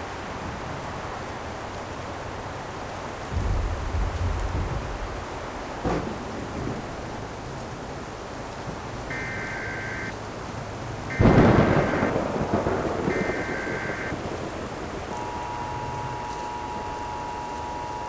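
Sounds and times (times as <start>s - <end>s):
steady rain: 0.0s - 18.0s
thunder clap rumbling: 3.3s - 10.2s, 11.0s - 18.0s
buzzy emergency alert data tones: 9.1s - 10.1s, 11.1s - 12.2s, 13.1s - 14.2s, 15.1s - 18.0s.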